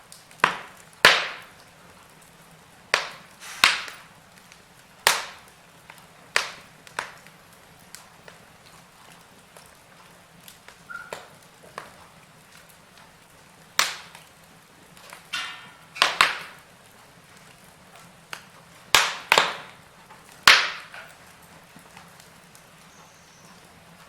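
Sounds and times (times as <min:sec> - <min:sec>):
firewood crackling in fireplace: 0:00.0 - 0:24.0
sharp loud wood pops: 0:00.4 - 0:01.6, 0:02.9 - 0:04.1, 0:05.0 - 0:05.5, 0:06.3 - 0:07.2, 0:13.8 - 0:14.2, 0:15.1 - 0:16.7, 0:18.4 - 0:19.8, 0:20.4 - 0:21.2.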